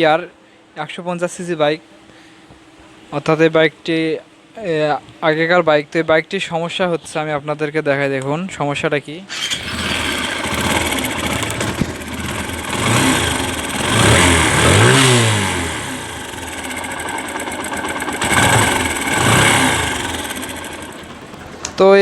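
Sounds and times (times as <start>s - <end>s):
rough motorcycle engine revving: 9.3s - 21.8s.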